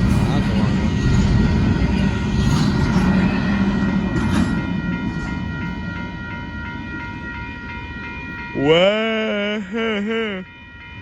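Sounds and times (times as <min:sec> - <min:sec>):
freight train wheels clattering: 0:00.0 - 0:08.6
steady high-pitched ringing: 0:00.0 - 0:11.0.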